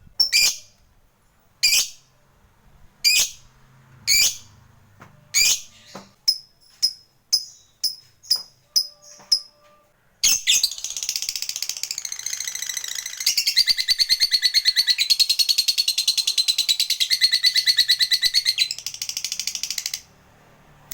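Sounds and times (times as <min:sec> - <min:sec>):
lovebird chirping and trilling: 0:00.2 - 0:00.8, 0:01.6 - 0:02.1, 0:03.0 - 0:03.5, 0:04.1 - 0:04.6, 0:05.3 - 0:09.6, 0:10.2 - 0:20.1.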